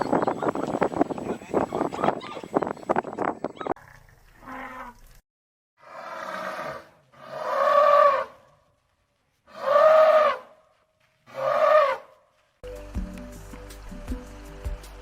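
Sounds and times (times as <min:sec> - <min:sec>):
animal calling: 0:05.8 - 0:08.4, 0:09.5 - 0:10.6, 0:11.3 - 0:12.2.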